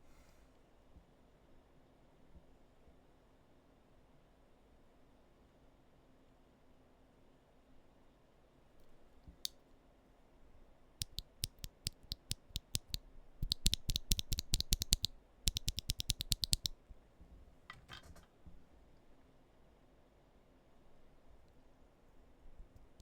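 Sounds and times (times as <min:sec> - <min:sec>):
keyboard switch clicking: 0:11.0 - 0:16.7.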